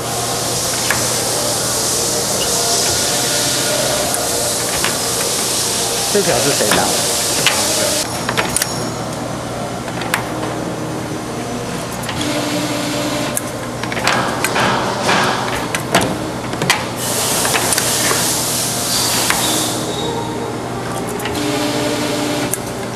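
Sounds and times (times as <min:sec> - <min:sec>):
machine humming: 0:00.0 - 0:08.6, 0:09.2 - 0:14.7.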